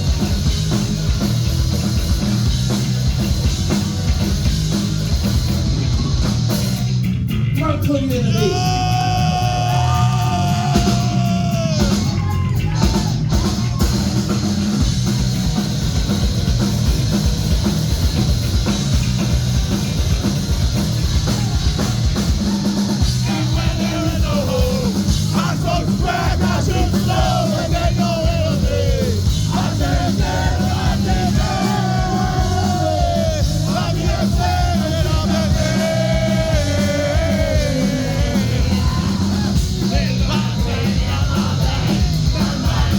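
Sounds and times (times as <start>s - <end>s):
punk rock band playing: 0.0s - 42.9s
sung and shouted vocals: 8.1s - 13.9s, 22.4s - 42.9s.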